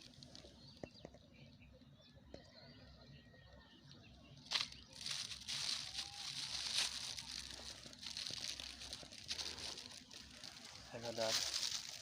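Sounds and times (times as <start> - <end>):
plastic crack: 4.5 - 12.0
plastic crinkling: 4.5 - 12.0.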